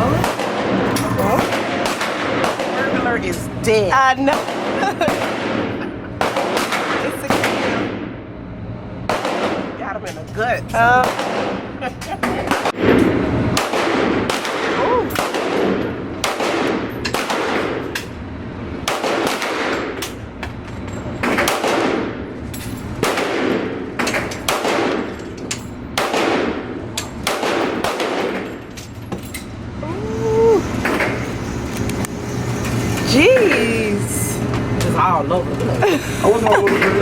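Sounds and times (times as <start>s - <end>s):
steady low hum: 0.0s - 37.0s
echoing gunshots: 0.1s - 3.2s, 4.3s - 8.2s, 9.0s - 9.8s, 11.0s - 11.8s, 12.5s - 18.0s, 18.8s - 20.0s, 21.2s - 22.3s, 23.0s - 25.1s, 25.9s - 28.6s.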